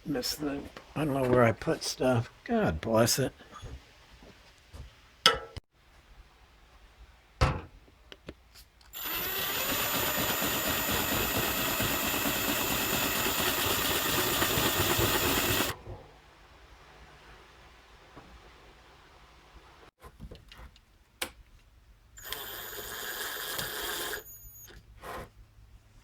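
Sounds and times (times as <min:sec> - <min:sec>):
power drill driving a screw: 0:09.0 - 0:15.8, 0:22.2 - 0:24.8.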